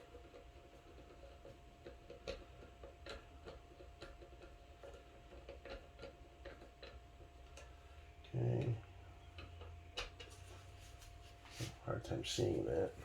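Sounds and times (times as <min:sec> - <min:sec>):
person speaking a word: 0:08.3 - 0:08.8, 0:11.8 - 0:13.0.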